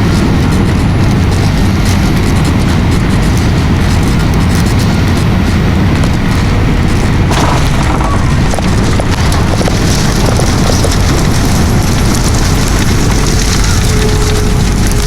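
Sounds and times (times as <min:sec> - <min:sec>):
airliner engine noise: 0:00.0 - 0:15.0
wheels rolling on runway: 0:00.0 - 0:15.0.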